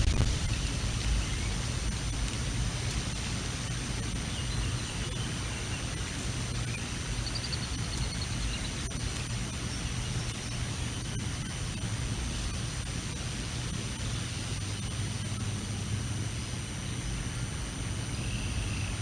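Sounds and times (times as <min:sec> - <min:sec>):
strong wind on microphone: 0:00.0 - 0:02.2
small bird singing: 0:04.3 - 0:08.9.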